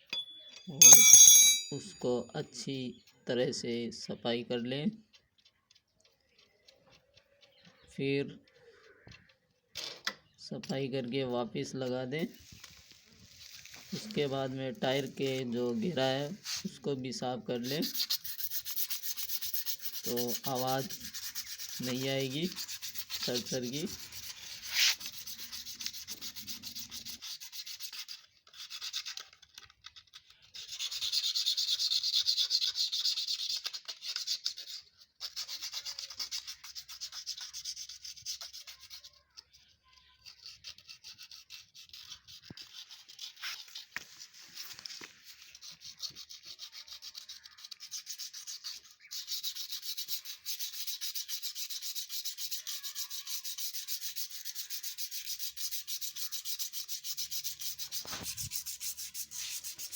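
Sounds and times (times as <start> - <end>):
brake parts being scrubbed: 17.6 - 27.7.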